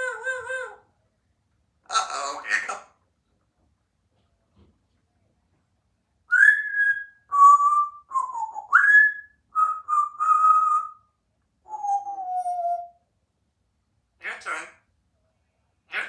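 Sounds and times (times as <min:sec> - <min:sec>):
parrot whistling: 0:06.3 - 0:11.0.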